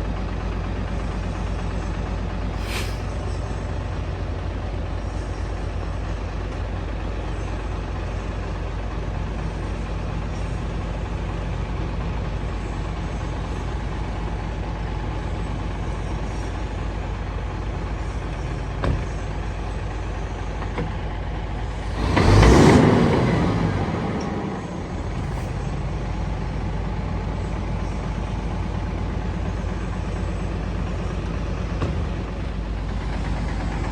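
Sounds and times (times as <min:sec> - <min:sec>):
diesel truck engine running: 0:00.0 - 0:33.9
loud rush of noise: 0:02.6 - 0:03.0.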